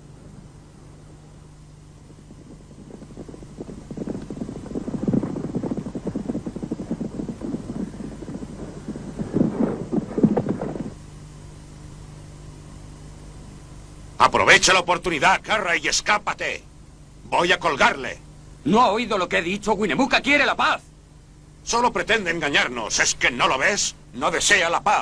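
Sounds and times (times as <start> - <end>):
horses galloping: 1.7 - 11.1.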